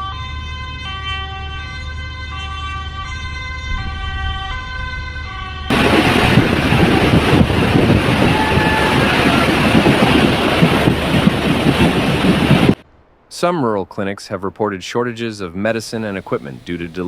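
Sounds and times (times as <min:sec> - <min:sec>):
two-tone emergency siren: 0:00.0 - 0:10.4
loud even rushing noise: 0:05.7 - 0:13.3.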